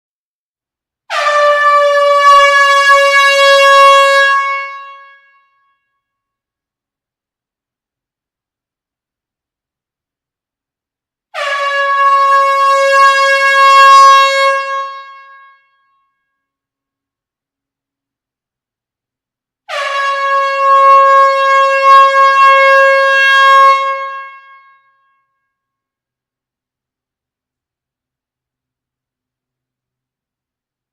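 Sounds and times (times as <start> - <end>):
air horn blast: 1.1 - 5.4, 11.3 - 15.7, 19.7 - 24.9.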